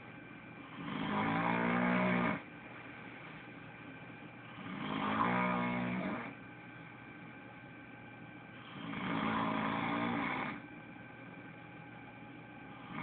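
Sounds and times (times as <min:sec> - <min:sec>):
person snoring: 0:00.8 - 0:02.5, 0:04.6 - 0:06.4, 0:08.6 - 0:10.6, 0:12.8 - 0:13.0.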